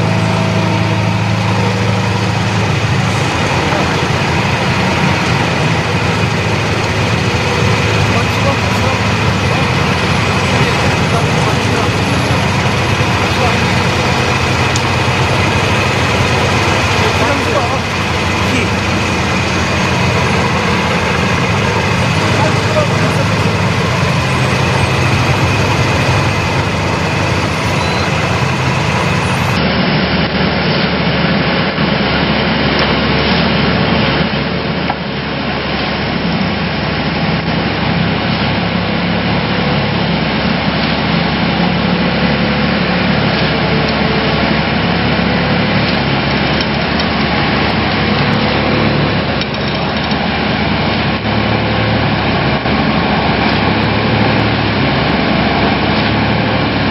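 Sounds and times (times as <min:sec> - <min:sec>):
vibratory pile hammer humming: 0:00.0 - 0:29.7
diesel engine under load: 0:00.0 - 0:56.9.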